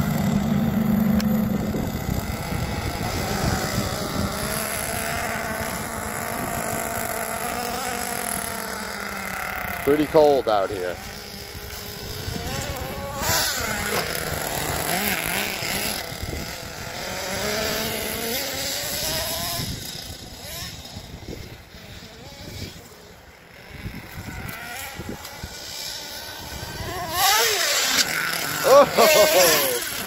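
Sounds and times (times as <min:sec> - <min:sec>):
small nitro engine revving: 0:00.0 - 0:30.0.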